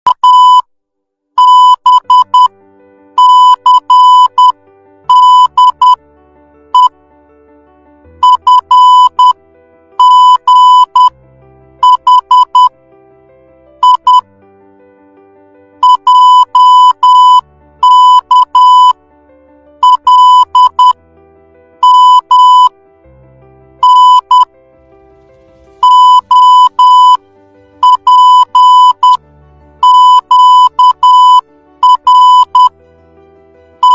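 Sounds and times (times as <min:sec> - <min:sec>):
morse code beeps: 0:00.1 - 0:00.7, 0:01.4 - 0:02.5, 0:03.2 - 0:06.0, 0:06.7 - 0:06.9, 0:08.2 - 0:09.4, 0:10.0 - 0:11.1, 0:11.8 - 0:12.7, 0:13.8 - 0:14.3, 0:15.8 - 0:19.0, 0:19.8 - 0:21.0, 0:21.8 - 0:22.7, 0:23.8 - 0:24.5, 0:25.8 - 0:27.2, 0:27.8 - 0:29.2, 0:29.8 - 0:32.7
faint background music: 0:13.1 - 0:33.9.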